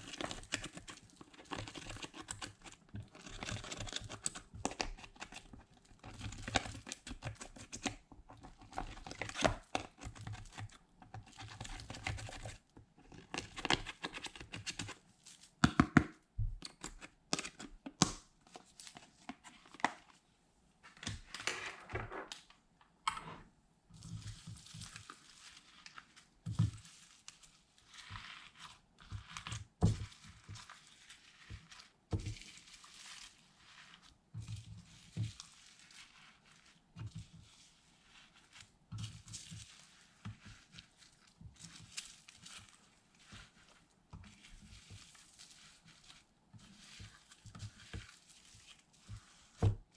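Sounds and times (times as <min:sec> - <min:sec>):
slime squishing by hand: 0:23.9 - 0:49.9.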